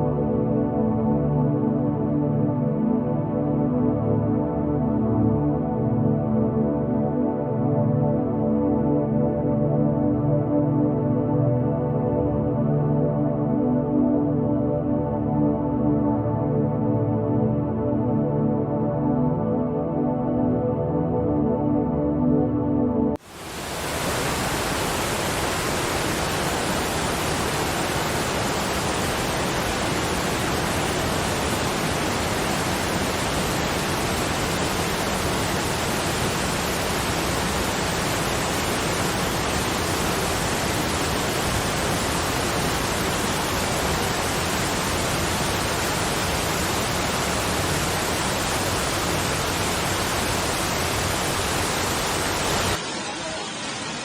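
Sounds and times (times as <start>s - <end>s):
steady rushing noise: 23.2s - 54.0s.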